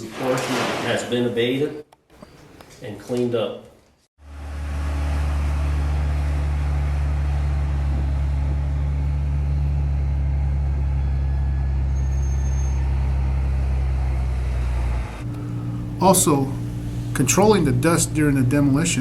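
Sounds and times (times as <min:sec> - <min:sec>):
large engine droning: 0:04.2 - 0:19.0.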